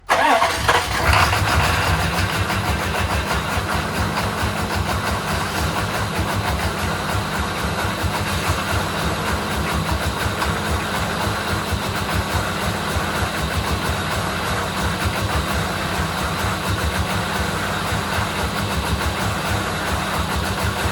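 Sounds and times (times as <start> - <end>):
diesel engine rough idle: 0.0 - 20.9.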